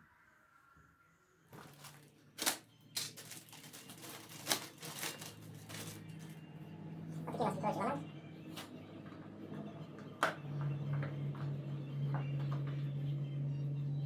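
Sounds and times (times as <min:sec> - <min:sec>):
tools and metal parts rattling: 0:01.6 - 0:06.4.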